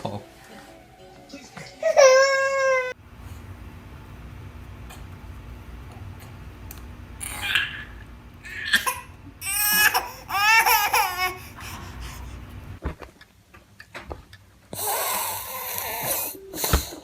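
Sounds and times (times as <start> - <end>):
baby crying: 1.7 - 3.0, 7.2 - 11.9, 14.8 - 16.4.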